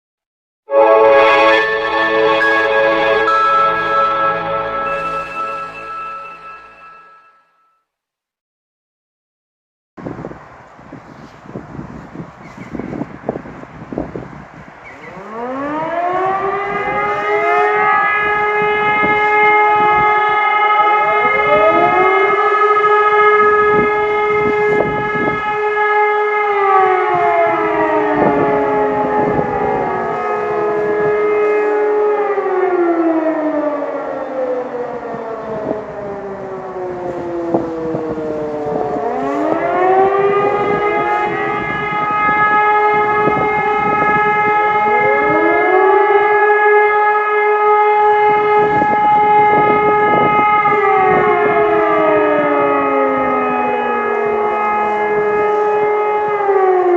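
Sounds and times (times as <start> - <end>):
civil defence sirens wailing: 0.7 - 7.2, 10.0 - 56.9.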